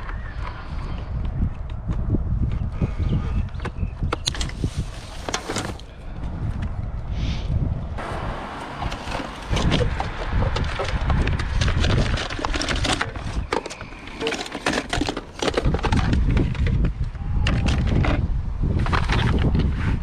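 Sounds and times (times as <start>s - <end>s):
wind rumble on microphone: 0.0s - 20.0s
hard objects clattering: 4.2s - 6.0s, 8.6s - 16.9s.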